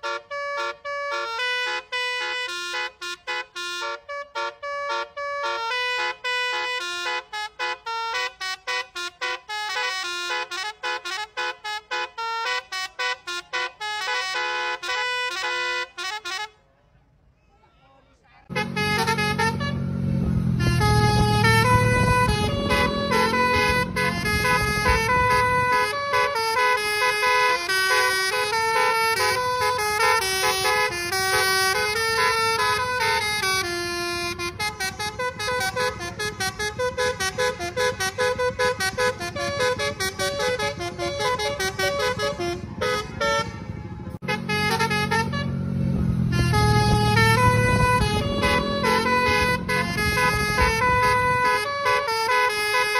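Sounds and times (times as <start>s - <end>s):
multi-tone bus horn melody: 0.0s - 16.7s, 18.5s - 52.9s
bus engine low rumble: 18.6s - 26.1s, 30.6s - 51.9s.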